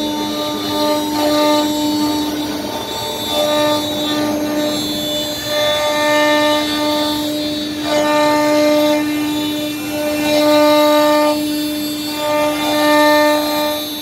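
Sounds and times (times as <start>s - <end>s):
cnc router machine whine: 0.0s - 14.0s.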